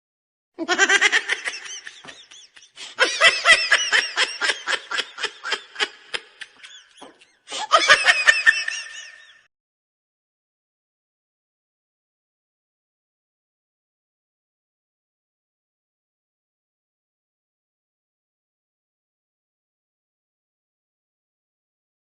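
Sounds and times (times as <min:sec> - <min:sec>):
person laughing: 0:00.6 - 0:09.5.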